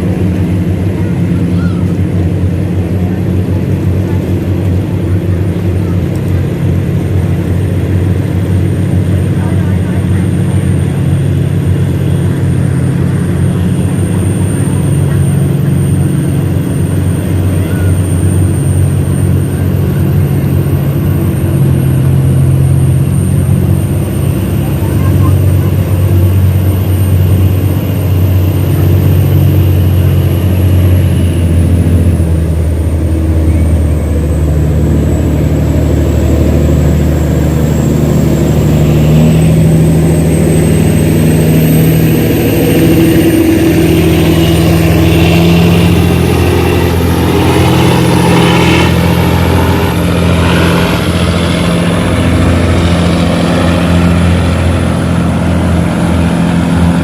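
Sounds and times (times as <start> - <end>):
tugboat diesel engine running: 0.0 - 57.0
faint high whine: 12.9 - 57.0.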